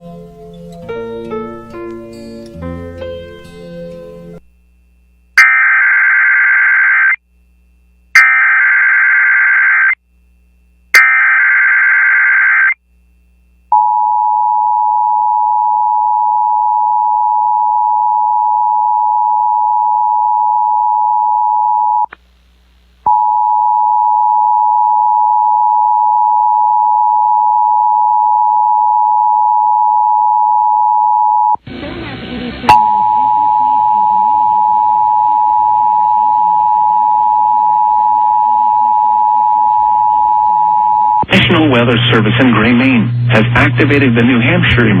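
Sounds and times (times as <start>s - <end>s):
data burst tones: 5.4s - 7.2s, 11.0s - 12.8s, 41.1s - 45.0s
two-tone attention signal: 32.7s - 38.7s.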